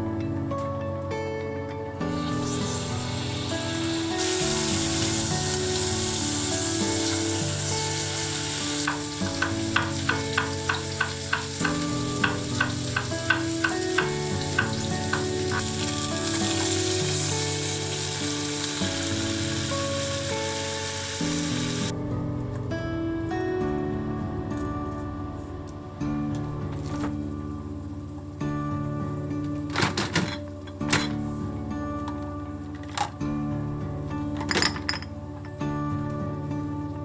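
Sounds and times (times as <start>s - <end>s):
soft background music: 0.0s - 37.0s
food sizzling in a pan: 2.1s - 21.9s.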